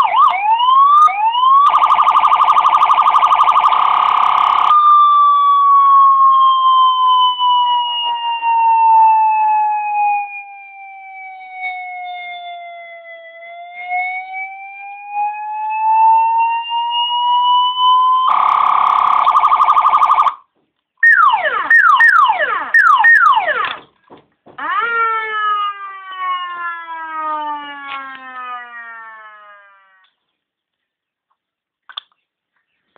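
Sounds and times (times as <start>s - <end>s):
quick falling siren sweeps: 0.0s - 20.4s, 24.6s - 30.1s
siren wail: 0.0s - 23.8s, 24.6s - 30.2s.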